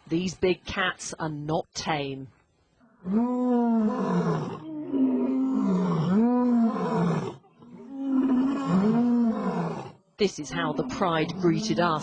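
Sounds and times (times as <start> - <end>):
lions roaring: 3.0 - 10.0.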